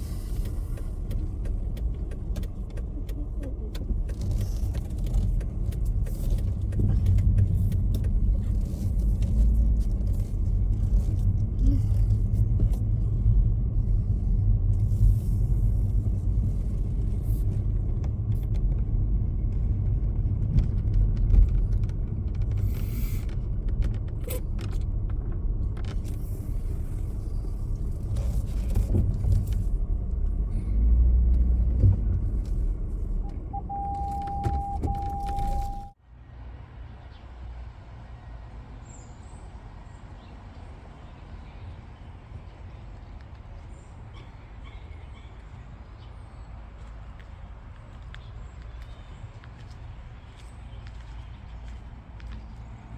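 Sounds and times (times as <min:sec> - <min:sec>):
road rumble inside vehicle: 0:00.0 - 0:52.9
steady beep tone: 0:33.3 - 0:36.0.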